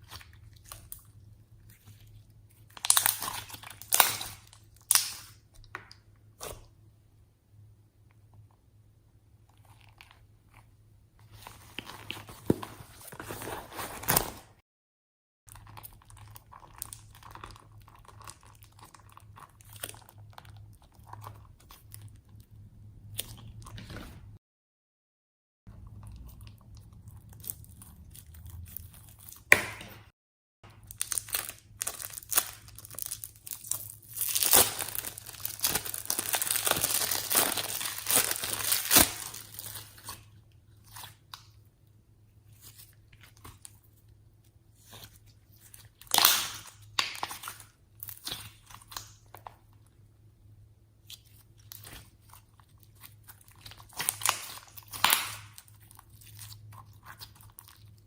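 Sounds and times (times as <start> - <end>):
slime crackling and crunching: 0.0 - 5.4, 15.5 - 22.4, 30.7 - 41.4, 44.8 - 49.7, 51.0 - 58.0.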